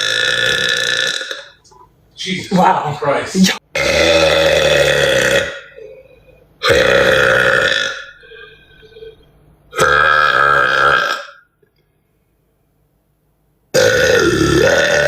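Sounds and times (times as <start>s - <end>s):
woman belching: 0.0s - 1.6s, 3.7s - 8.5s, 9.7s - 11.4s, 13.7s - 15.0s.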